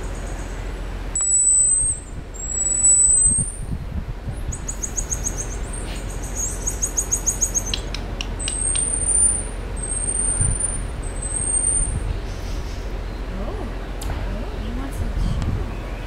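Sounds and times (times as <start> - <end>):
marmosets chirping: 0.0 - 0.6, 1.2 - 3.7, 4.4 - 14.8
marmosets long whistles: 1.2 - 3.6, 4.6 - 12.1.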